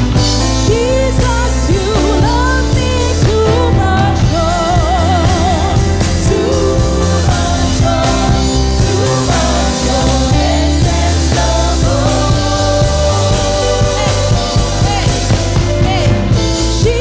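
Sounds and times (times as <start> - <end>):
band with steady bass: 0.0 - 17.0
person singing with vibrato: 0.0 - 17.0.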